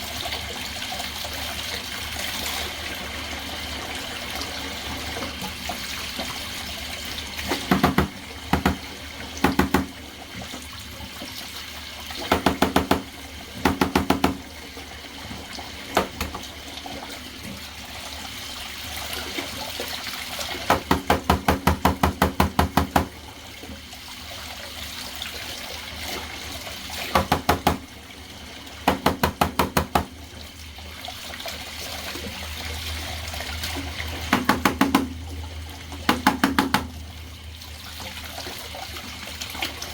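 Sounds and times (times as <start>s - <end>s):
bathtub spigot running: 0.0s - 39.9s
rapid knocking: 7.5s - 10.0s, 12.3s - 14.4s, 20.7s - 23.2s, 27.2s - 27.8s, 28.9s - 30.1s.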